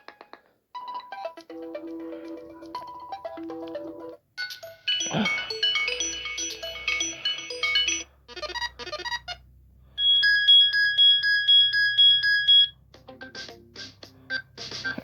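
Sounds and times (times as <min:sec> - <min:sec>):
phone ringtone melodies: 0:00.8 - 0:09.4, 0:10.0 - 0:13.6
pulsing high ring tone: 0:04.7 - 0:09.2, 0:10.0 - 0:12.7.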